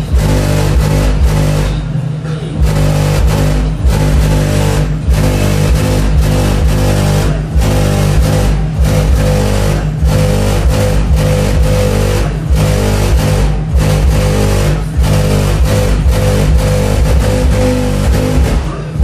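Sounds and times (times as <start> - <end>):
bass-heavy music from subwoofers: 0.0 - 19.0
car body rattling: 0.0 - 19.0.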